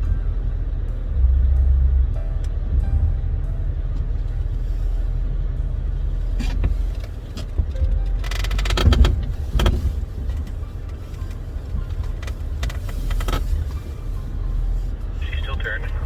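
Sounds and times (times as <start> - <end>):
vehicle engine rumble: 0.0 - 16.0
knocks and rattles: 6.4 - 13.5.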